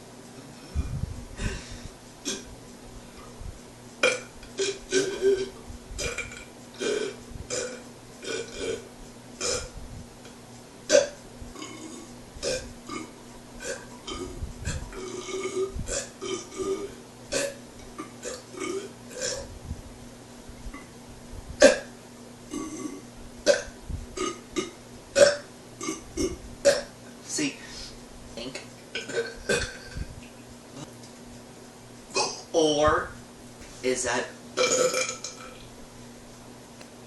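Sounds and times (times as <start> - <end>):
man burping: 1.4 - 2.5, 4.0 - 9.8, 10.9 - 19.5, 21.6 - 21.9, 22.5 - 26.9, 29.0 - 30.1, 32.1 - 32.5, 34.6 - 35.6.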